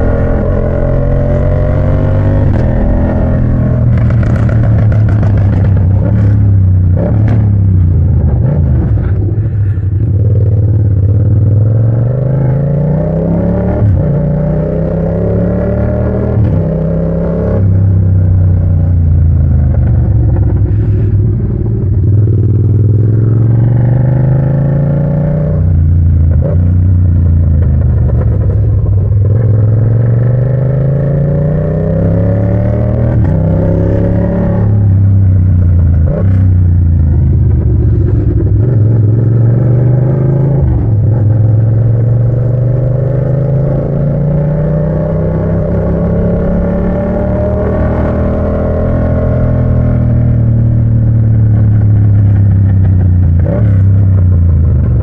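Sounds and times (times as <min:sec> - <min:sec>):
exhaust cracks: 0:00.0 - 0:06.4
motorcycle engine accelerating hard: 0:00.0 - 0:55.0.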